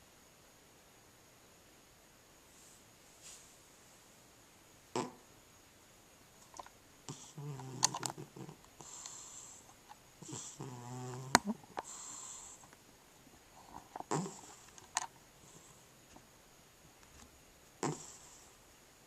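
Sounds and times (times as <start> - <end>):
cat snoring: 4.9 - 5.3, 7.1 - 12.7, 13.6 - 14.8, 15.4 - 15.8, 17.8 - 18.6.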